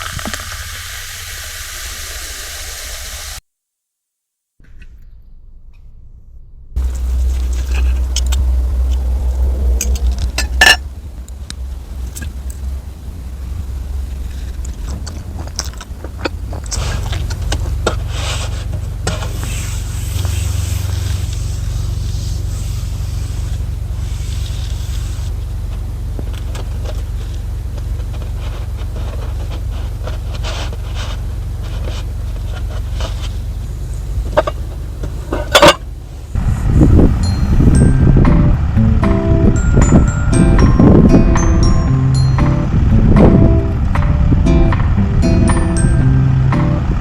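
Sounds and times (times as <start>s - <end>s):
steady low rumble: 4.6s - 47.0s
scraping and rustling: 6.8s - 36.4s.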